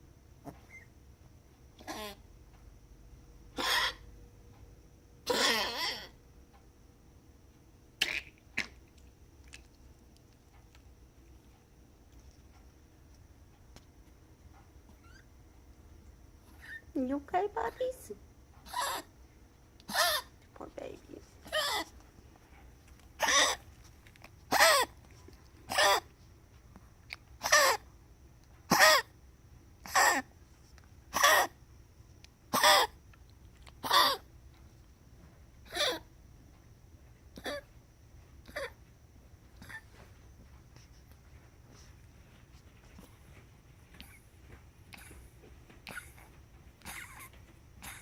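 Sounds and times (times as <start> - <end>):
pet coughing: 1.8 - 2.2, 3.5 - 4.0, 5.2 - 6.1, 8.0 - 8.8, 18.6 - 19.1, 19.8 - 20.3, 21.4 - 21.9, 23.2 - 23.6, 24.5 - 25.0, 25.7 - 26.1, 27.4 - 27.8, 28.7 - 29.1, 29.8 - 30.3, 31.1 - 31.6, 32.5 - 33.0, 33.8 - 34.3, 35.7 - 36.0, 37.3 - 37.7, 38.4 - 38.8, 39.6 - 40.0, 44.9 - 48.0.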